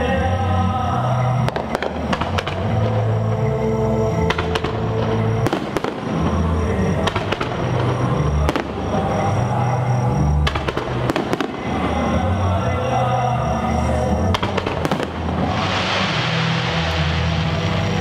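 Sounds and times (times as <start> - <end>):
fireworks cracks and bangs: 1.4 - 3.5, 4.2 - 9.7, 10.3 - 12.4, 14.2 - 18.0.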